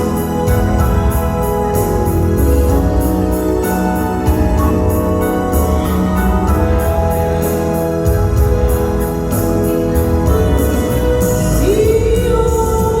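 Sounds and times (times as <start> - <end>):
drums: 0.0 - 13.0
electronic organ keyboard: 0.0 - 13.0
person singing: 9.8 - 13.0.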